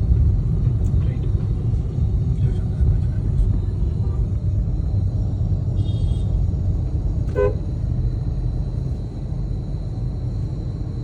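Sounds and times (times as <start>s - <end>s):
low rumble of road traffic: 0.0s - 11.0s
vehicle horn toot: 5.8s - 6.4s, 7.3s - 7.6s.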